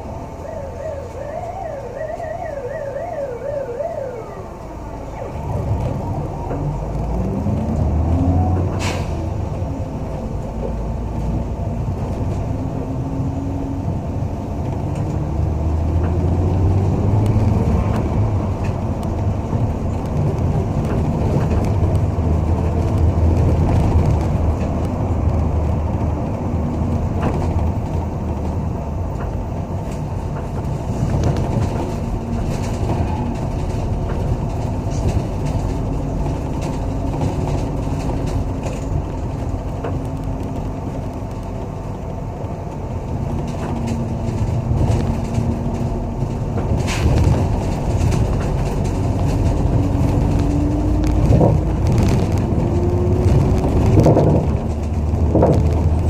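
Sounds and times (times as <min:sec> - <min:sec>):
bus engine and road rumble: 0:00.0 - 0:56.0
wailing siren: 0:00.1 - 0:08.8.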